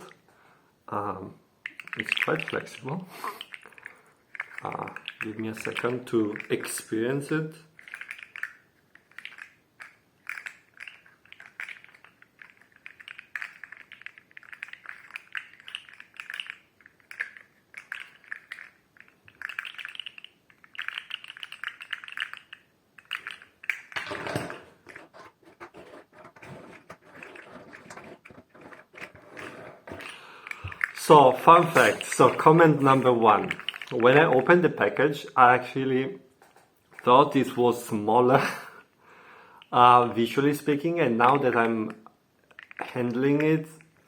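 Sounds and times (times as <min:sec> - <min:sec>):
fidget toy segments clicking: 0:07.7 - 0:24.1, 0:26.8 - 0:34.6.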